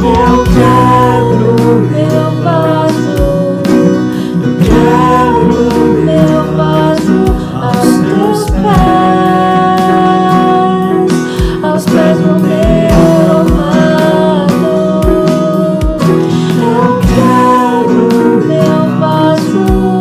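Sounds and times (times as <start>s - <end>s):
bass drum hits: 0.0s - 1.8s, 8.5s - 9.2s, 12.6s - 14.0s
guitar: 0.0s - 20.0s
held melody notes: 0.0s - 20.0s.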